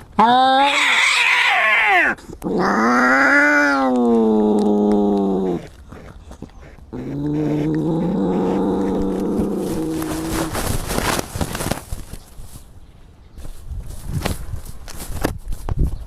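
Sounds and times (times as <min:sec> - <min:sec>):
cat yowling: 0:00.2 - 0:05.6.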